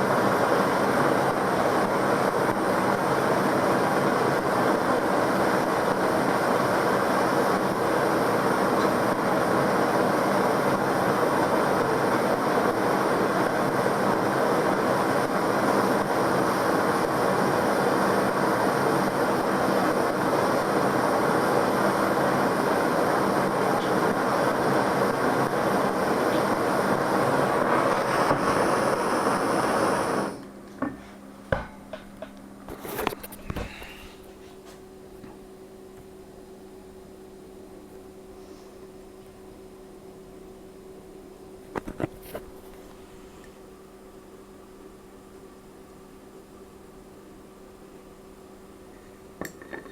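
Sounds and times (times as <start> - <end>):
gas torch flame roaring: 0.0 - 30.4.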